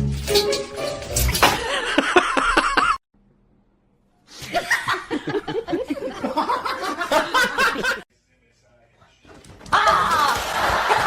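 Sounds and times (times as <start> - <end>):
people laughing: 1.6 - 3.0, 4.4 - 8.1, 9.7 - 11.0.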